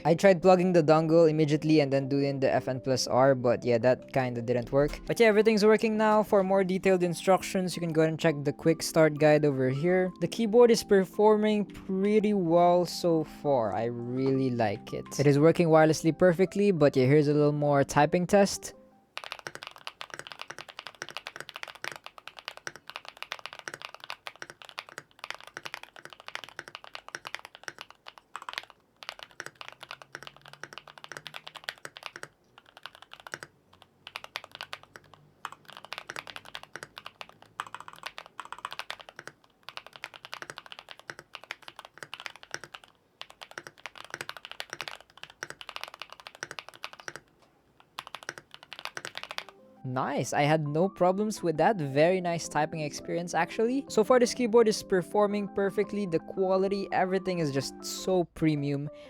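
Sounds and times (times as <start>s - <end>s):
mechanical keyboard typing: 19.2s - 49.6s.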